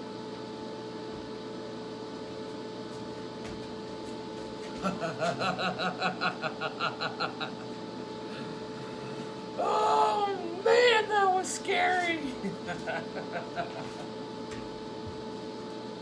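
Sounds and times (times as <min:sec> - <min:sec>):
steady electrical hum: 0:00.0 - 0:16.0
man laughing: 0:04.8 - 0:08.9, 0:09.6 - 0:14.2.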